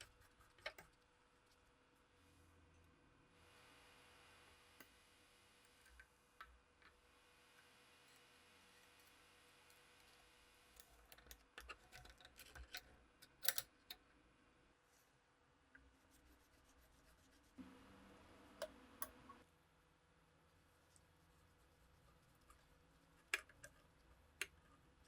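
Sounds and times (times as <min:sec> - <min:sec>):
faint low hum: 0:00.0 - 0:25.0
revolver metal parts clicking: 0:10.8 - 0:14.0.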